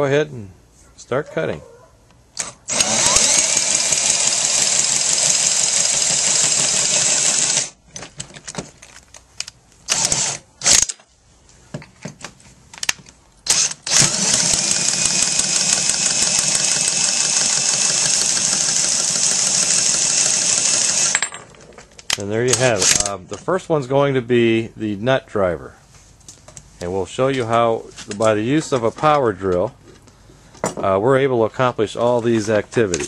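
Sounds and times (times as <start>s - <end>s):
power drill spinning pipe cutter: 2.4s - 7.8s, 9.9s - 10.9s, 13.5s - 21.4s, 22.5s - 23.2s.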